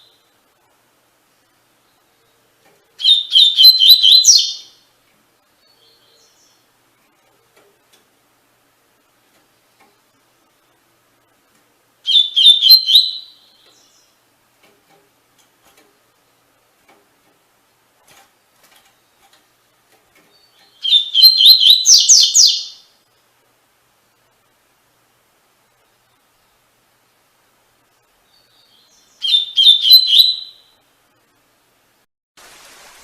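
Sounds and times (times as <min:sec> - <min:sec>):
bird singing warbling phrases: 0:01.8 - 0:04.8, 0:05.5 - 0:06.7, 0:12.0 - 0:14.2, 0:20.3 - 0:22.9, 0:28.2 - 0:30.8.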